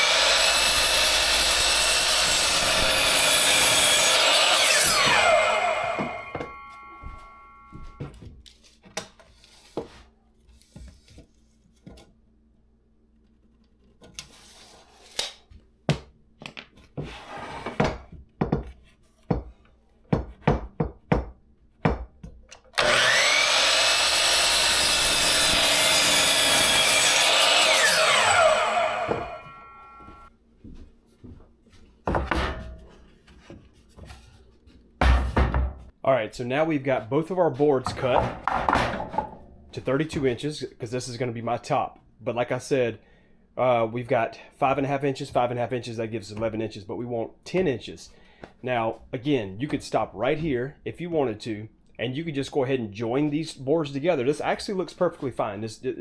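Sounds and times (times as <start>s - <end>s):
power saw cutting boards: 0.0s - 8.0s, 22.8s - 30.3s
saw blade winding down whine: 0.0s - 8.0s, 22.8s - 30.3s.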